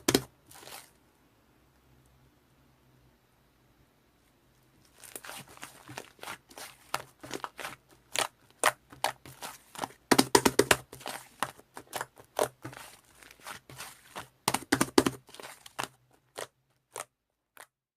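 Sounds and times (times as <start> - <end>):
slime crackling and popping: 4.9 - 17.8.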